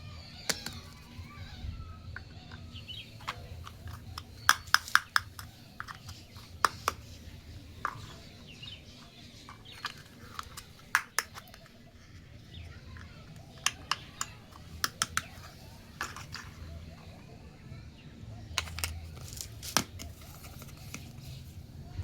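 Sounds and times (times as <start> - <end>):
plastic toy pieces clicking: 0.5 - 1.2, 2.2 - 7.2, 7.8 - 8.3, 8.9 - 11.8, 12.8 - 16.6, 18.6 - 21.1.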